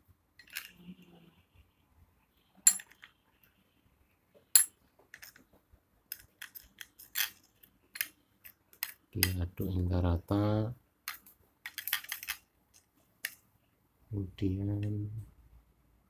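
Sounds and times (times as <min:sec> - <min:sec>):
metal spoon clinking on container: 0:02.7 - 0:03.0.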